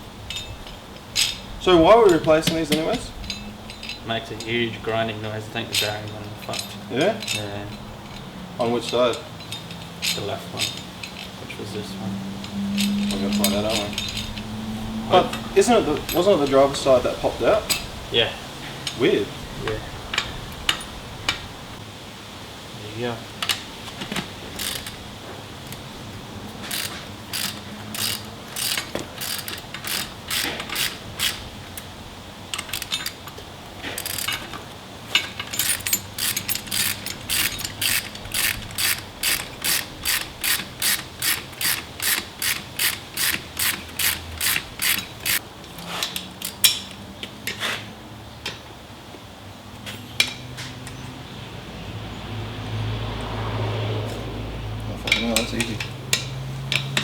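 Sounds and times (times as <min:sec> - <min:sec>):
ratchet wrench clicking: 0:24.5 - 0:25.9, 0:26.6 - 0:31.9, 0:32.5 - 0:47.0.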